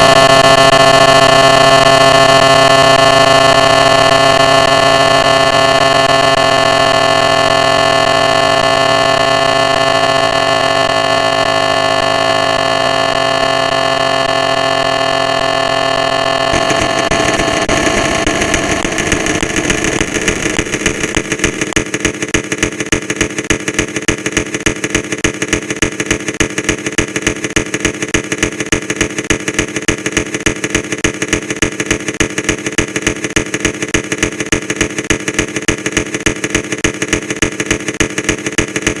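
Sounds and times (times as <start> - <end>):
pulsing engine-like drone: 0.0 - 21.8.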